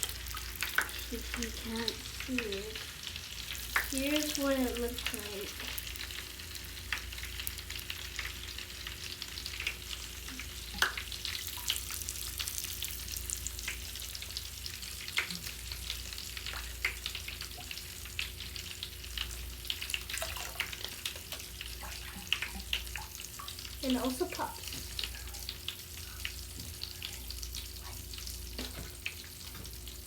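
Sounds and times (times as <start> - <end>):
fizz of tiny pops in water: 3.6 - 5.7, 9.6 - 11.8.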